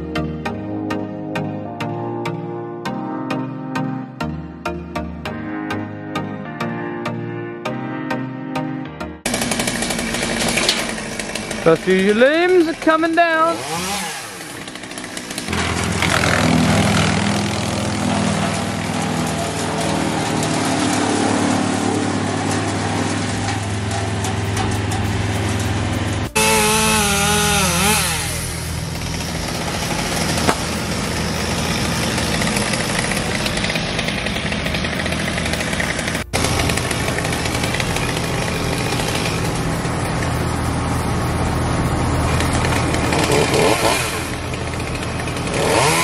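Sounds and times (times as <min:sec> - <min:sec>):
chainsaw cutting limbs: 0:09.3 - 0:46.0.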